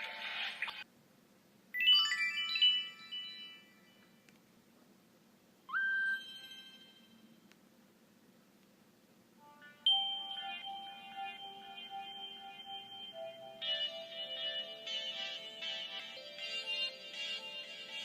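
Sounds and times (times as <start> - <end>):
bright chiming alert tone: 5.8 - 7.2, 9.9 - 17.6.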